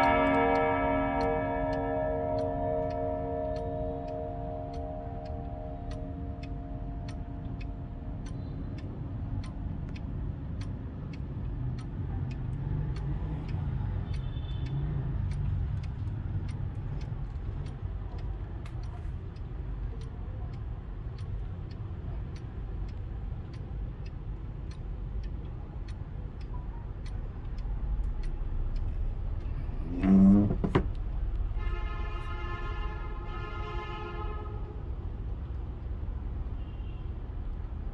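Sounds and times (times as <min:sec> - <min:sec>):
clock chime tones: 0:00.0 - 0:10.7
low background rumble: 0:00.0 - 0:14.3, 0:15.1 - 0:37.9
clock ticking: 0:00.0 - 0:37.9.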